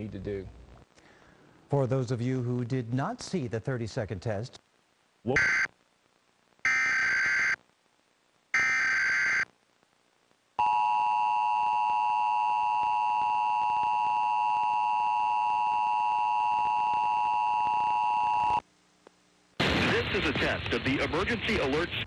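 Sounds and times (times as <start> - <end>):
screeching digital data tones: 5.4 - 5.7.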